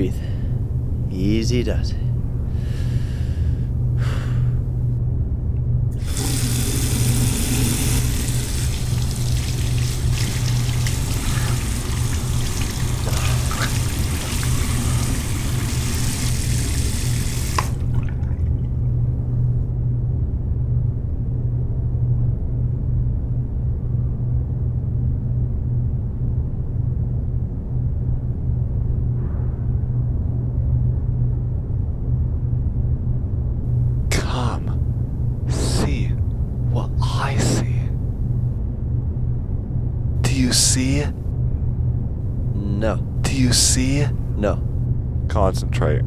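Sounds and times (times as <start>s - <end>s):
low steady hum: 0.0s - 46.0s
water running: 6.0s - 18.8s.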